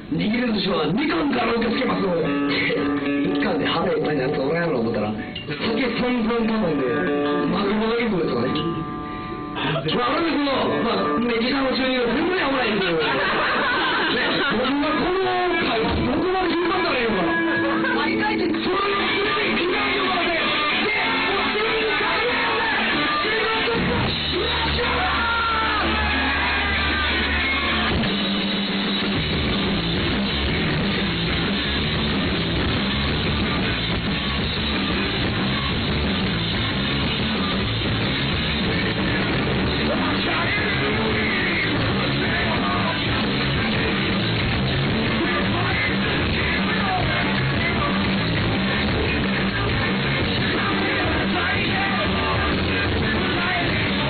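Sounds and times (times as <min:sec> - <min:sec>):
bass notes: 0:00.0 - 0:54.0
electric guitar: 0:00.0 - 0:54.0
live rock band playing: 0:01.2 - 0:54.0.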